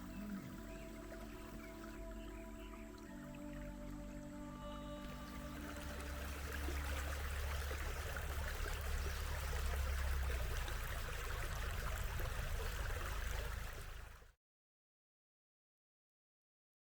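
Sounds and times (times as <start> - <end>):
background music: 0.0 - 9.8
running water rushing: 0.0 - 14.3.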